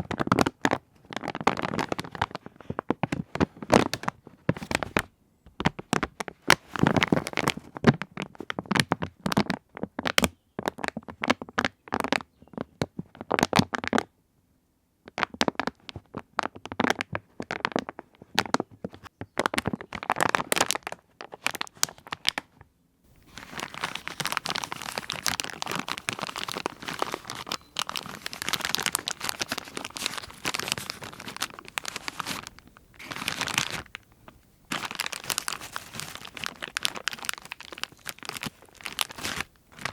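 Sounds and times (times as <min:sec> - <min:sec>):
plastic sheeting crinkling: 0:00.0 - 0:05.0, 0:19.4 - 0:22.4, 0:23.1 - 0:39.9.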